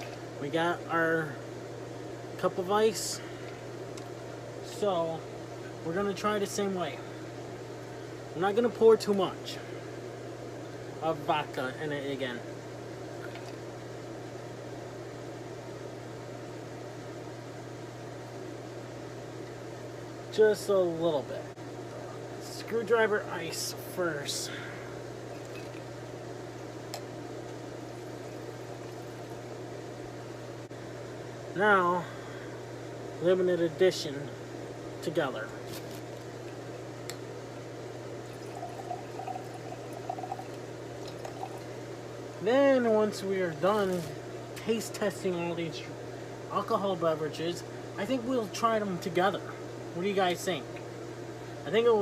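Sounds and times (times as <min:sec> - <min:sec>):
ventilation fan humming: 0:00.0 - 0:52.0
drink pouring into cup of ice: 0:25.3 - 0:25.9, 0:38.2 - 0:41.8.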